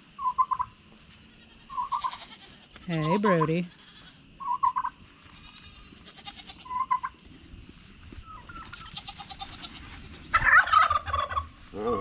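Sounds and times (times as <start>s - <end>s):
goat bleating: 1.3s - 4.2s, 5.2s - 7.1s, 8.8s - 10.2s.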